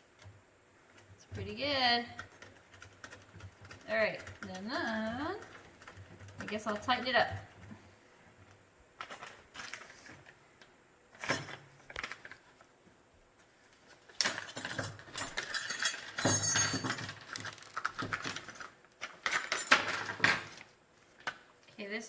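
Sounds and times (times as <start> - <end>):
metal tools clinking and rattling: 14.2 - 20.6.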